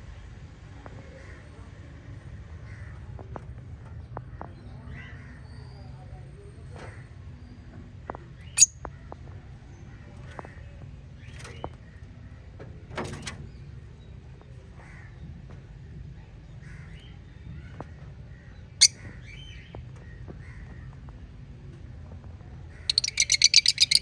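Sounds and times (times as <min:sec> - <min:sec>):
parrots chirping: 0:08.5 - 0:08.8, 0:22.9 - 0:24.0.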